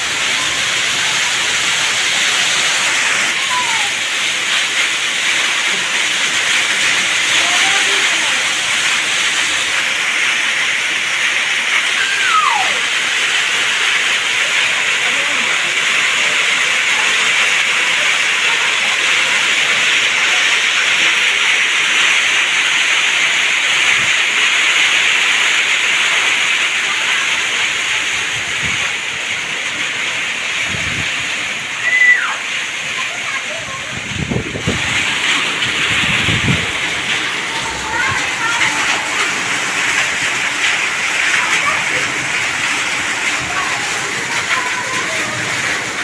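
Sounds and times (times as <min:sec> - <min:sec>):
heavy rain hissing: 0:00.0 - 0:46.0
falling high whistle: 0:12.0 - 0:12.8, 0:31.8 - 0:32.4.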